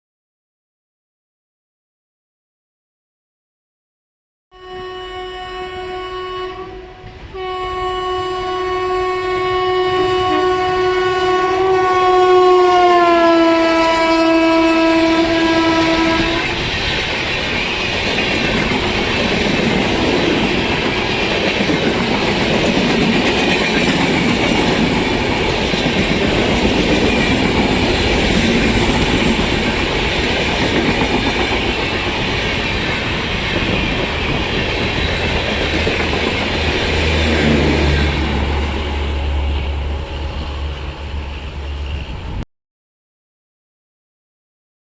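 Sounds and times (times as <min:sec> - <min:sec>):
locomotive horn: 0:04.5 - 0:16.7, 0:36.8 - 0:42.4
train coaches rolling on rails: 0:13.5 - 0:42.4.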